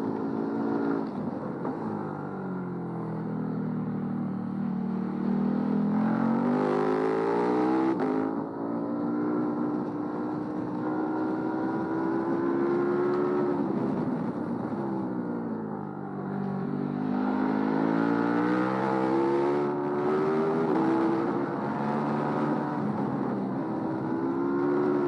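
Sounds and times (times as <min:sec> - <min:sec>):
motorcycle engine revving: 0:03.9 - 0:15.1.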